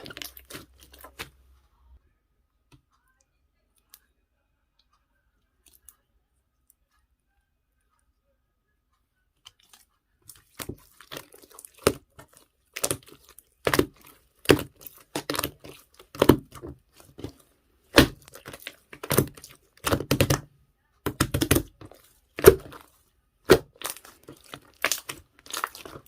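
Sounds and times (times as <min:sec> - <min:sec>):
slime crackling and squelching: 0:00.0 - 0:01.5, 0:09.5 - 0:26.0.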